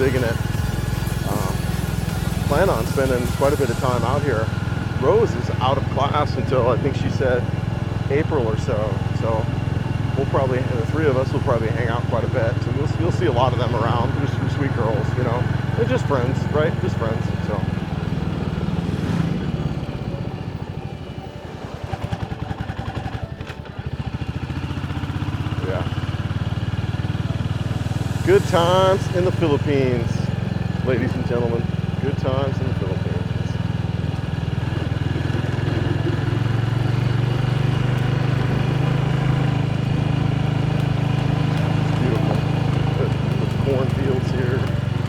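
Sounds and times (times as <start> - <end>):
motorcycle engine running: 0.0 - 45.0.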